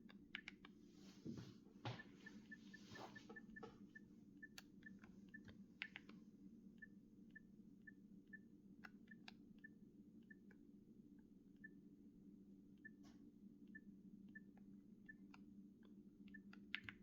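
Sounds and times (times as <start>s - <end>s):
phone keypad beeps: 2.0s - 6.0s.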